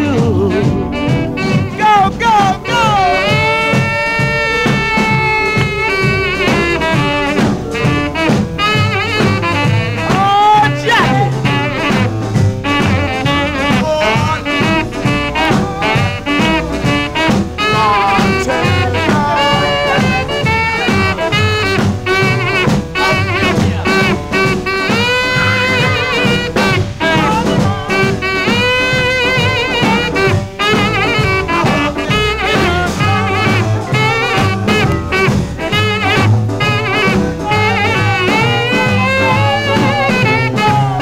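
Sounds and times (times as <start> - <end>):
horns playing held notes: 0.0 - 41.0
swing band music: 0.0 - 41.0.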